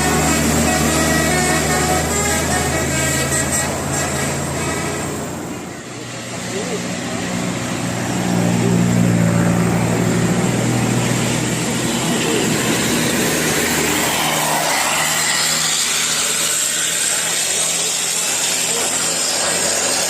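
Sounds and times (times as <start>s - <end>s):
bus engine drone: 0.0s - 20.0s
passing vehicle rushing: 0.0s - 20.0s.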